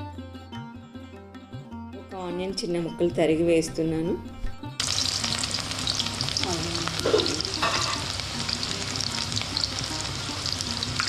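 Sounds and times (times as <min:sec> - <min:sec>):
onion sizzling in oil: 0:04.8 - 0:11.0.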